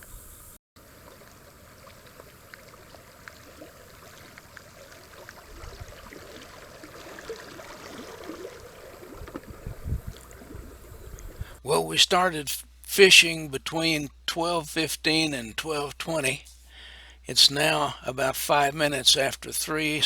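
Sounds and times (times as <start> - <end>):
river water trickling: 0.8 - 12.3
small ticks: 1.1 - 5.9.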